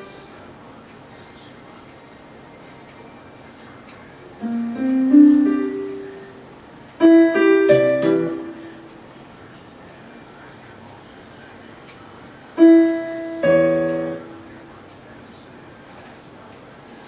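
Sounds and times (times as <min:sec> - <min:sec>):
electronic keyboard piano notes: 0:00.0 - 0:00.6, 0:04.4 - 0:09.2, 0:12.5 - 0:14.9.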